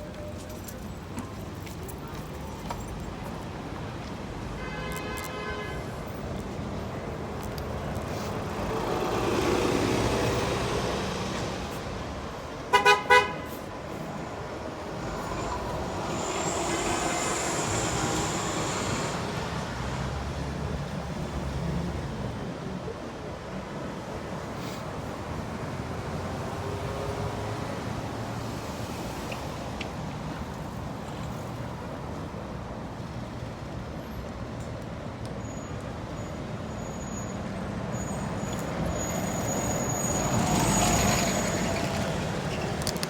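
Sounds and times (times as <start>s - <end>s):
road traffic passing: 0.0s - 43.0s
vehicle horn tooting: 4.6s - 6.0s, 12.7s - 13.6s.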